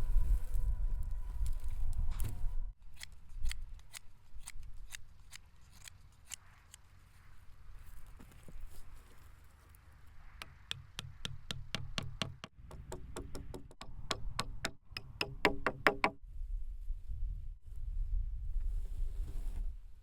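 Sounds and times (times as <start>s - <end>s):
rapid sharp knocks: 10.4s - 16.2s.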